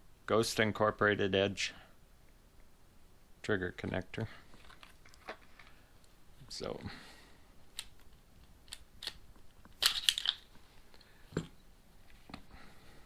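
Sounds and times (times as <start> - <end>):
pistol parts clicking: 9.8 - 10.5.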